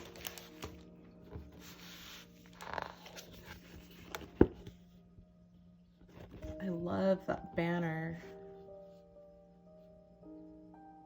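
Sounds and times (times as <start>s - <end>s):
paper rustling: 0.0s - 4.8s.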